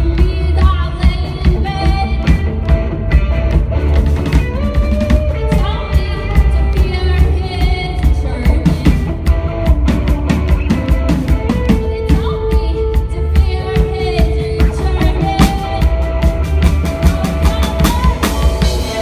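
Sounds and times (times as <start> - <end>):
live rock band playing: 0.0 - 19.0
person singing: 4.4 - 9.3, 11.5 - 19.0.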